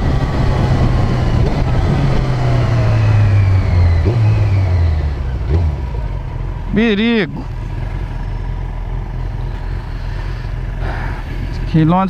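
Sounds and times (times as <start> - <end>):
wind noise: 0.0 - 4.6
motorcycle engine slowing: 0.0 - 12.0.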